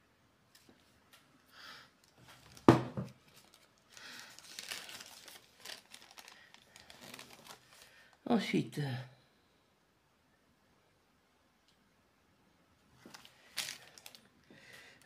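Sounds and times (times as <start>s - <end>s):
plastic packaging crinkling: 2.0s - 8.2s, 13.0s - 15.0s.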